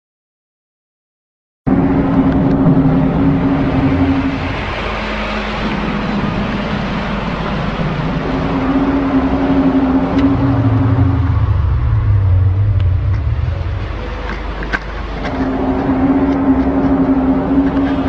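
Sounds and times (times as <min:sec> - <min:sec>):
background noise: 0:01.7 - 0:18.0
low groaning drone: 0:01.7 - 0:18.0.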